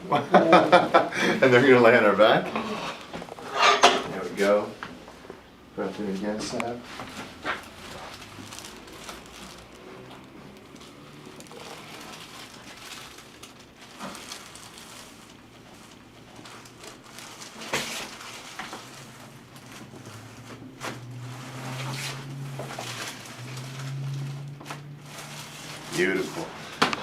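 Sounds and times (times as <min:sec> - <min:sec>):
spinal joint cracking: 0:07.3 - 0:21.2.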